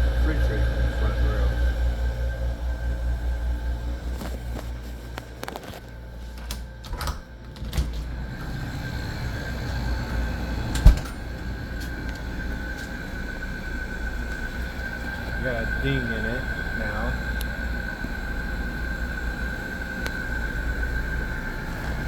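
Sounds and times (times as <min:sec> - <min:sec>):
air conditioner humming: 0:00.0 - 0:22.0
thin steady whine: 0:00.0 - 0:22.0.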